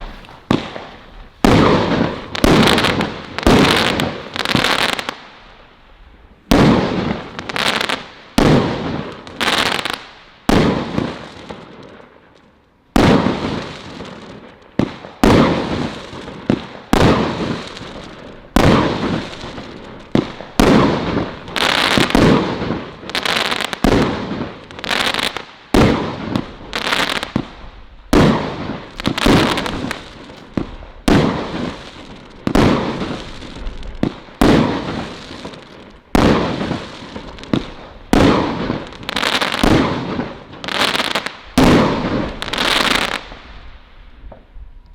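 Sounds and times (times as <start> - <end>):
firework firing rapid shots: 0.0 - 5.2, 14.8 - 27.6, 28.2 - 43.4
firework crackles: 0.0 - 44.9.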